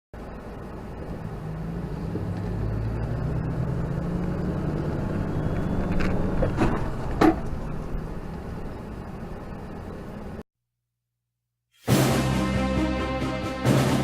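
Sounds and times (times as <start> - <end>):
road noise: 0.2 - 10.4
vehicle engine hum: 0.2 - 10.4.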